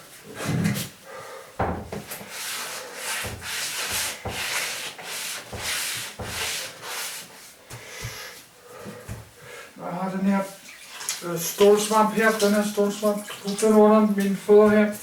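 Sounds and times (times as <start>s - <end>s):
scouring pad scrubbing floor: 2.1s - 8.1s, 10.8s - 15.0s.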